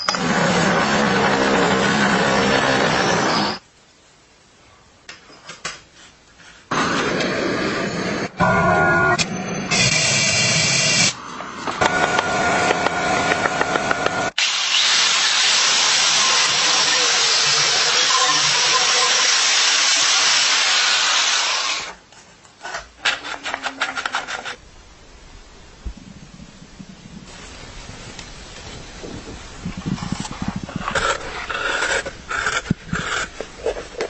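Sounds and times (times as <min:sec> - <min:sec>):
loud steady hiss: 0:09.7 - 0:22.4, 0:24.6 - 0:30.0
power tool whining: 0:13.2 - 0:21.9.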